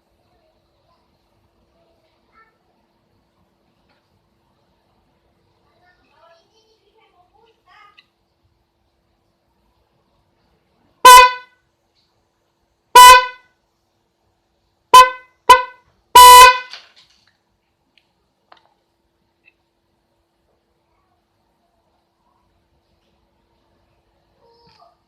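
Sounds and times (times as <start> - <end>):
electric horn honking: 11.0 - 11.5, 13.0 - 13.4, 14.9 - 16.8.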